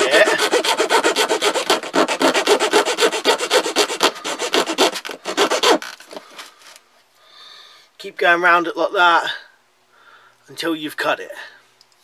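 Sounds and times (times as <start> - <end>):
saw blade rasping on metal shaft: 0.0 - 6.0.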